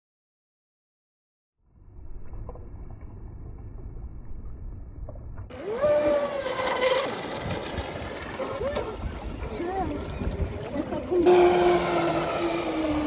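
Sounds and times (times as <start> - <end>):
wind and water rumble: 1.7 - 13.0
electric motor whining: 11.1 - 13.0.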